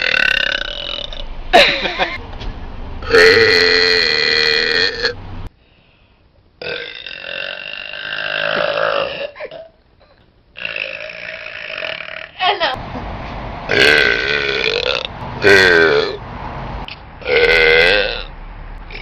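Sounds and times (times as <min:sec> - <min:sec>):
woman belching: 0:00.0 - 0:01.2, 0:06.6 - 0:09.8, 0:10.6 - 0:12.5.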